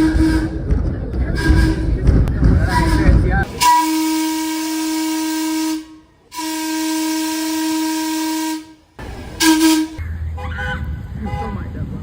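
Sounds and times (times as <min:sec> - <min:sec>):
train air horn blasts: 0:00.0 - 0:00.6, 0:02.7 - 0:11.4
low engine rumble: 0:00.0 - 0:04.5.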